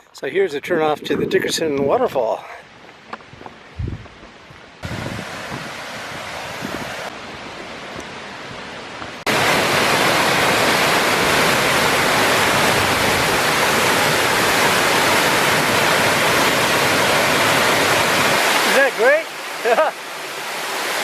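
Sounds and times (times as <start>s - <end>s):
wind noise: 0.6s - 2.3s, 3.1s - 8.7s, 9.3s - 18.4s
trailside water: 0.7s - 21.0s
waterfall rushing: 4.8s - 21.0s.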